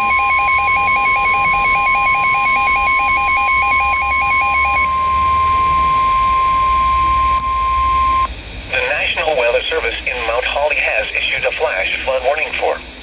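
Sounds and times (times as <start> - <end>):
rapid two-pitch beeping alarm: 0.0 - 8.3
steady alarm tone: 0.0 - 10.6.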